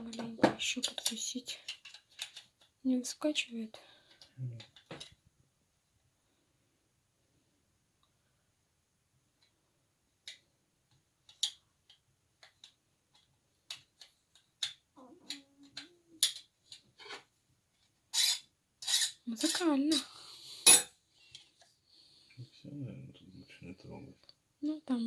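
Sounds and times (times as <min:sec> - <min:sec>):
small metal clicks and clinks: 0:00.8 - 0:02.5.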